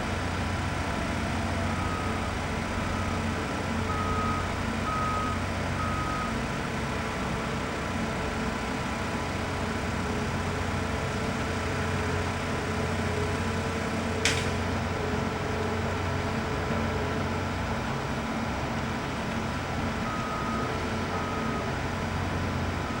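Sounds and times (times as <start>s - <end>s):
diesel construction machinery running: 0.0s - 23.0s
reversing alarm beeping: 1.7s - 6.4s, 20.0s - 21.8s.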